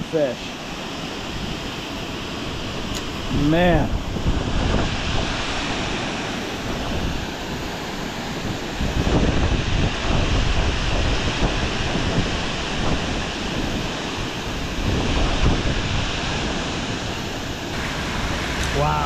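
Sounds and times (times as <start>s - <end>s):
wind buffeting microphone: 1.2s - 19.0s
creek water rushing: 16.0s - 19.0s.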